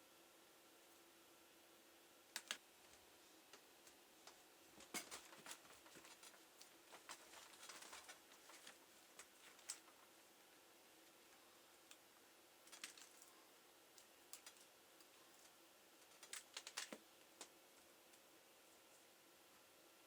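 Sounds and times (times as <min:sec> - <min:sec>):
faint steady hum: 0:00.0 - 0:20.0
laptop parts clicking and tapping: 0:02.4 - 0:02.6, 0:14.3 - 0:14.6.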